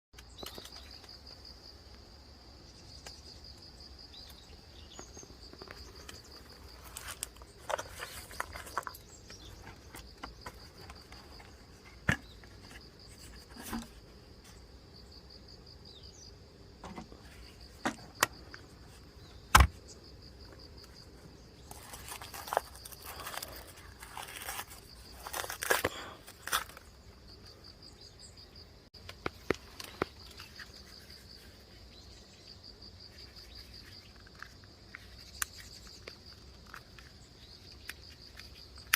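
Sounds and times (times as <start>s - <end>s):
clicks and knocks of handling: 0.2s - 1.2s, 29.0s - 30.8s
crickets trilling: 0.2s - 38.9s
rustling: 5.5s - 14.6s, 21.6s - 26.9s.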